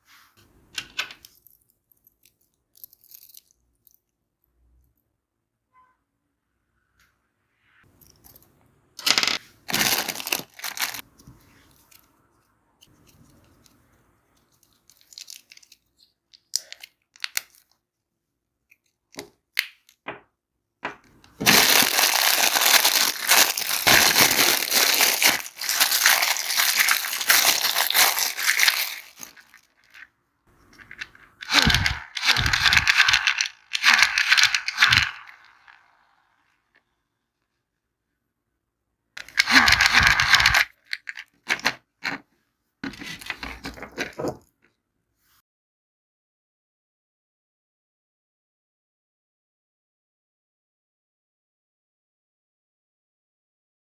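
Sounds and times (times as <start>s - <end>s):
plastic wrappers crinkling: 9.0s - 11.1s, 14.5s - 17.8s, 21.3s - 30.1s, 30.7s - 36.2s, 39.2s - 42.2s.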